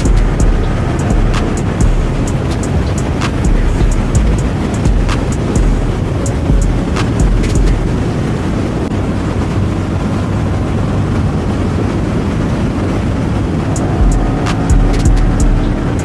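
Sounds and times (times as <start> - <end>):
motorcycle engine running: 0.0 - 7.9, 13.7 - 16.0
wind rush on microphone: 0.0 - 16.0.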